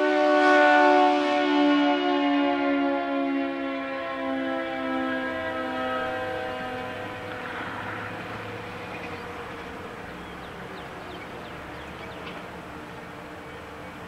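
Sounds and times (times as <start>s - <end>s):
tornado siren tone: 0.0s - 14.0s
steady outdoor rumble: 5.0s - 14.0s.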